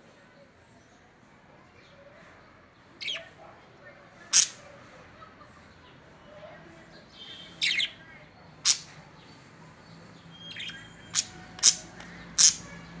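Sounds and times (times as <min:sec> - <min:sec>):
lovebirds chirping: 0:06.9 - 0:13.0.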